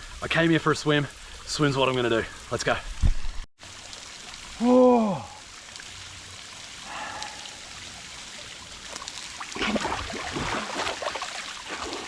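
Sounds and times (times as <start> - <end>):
water trickling into pool: 0.0 - 12.0
water splashing: 5.6 - 12.0.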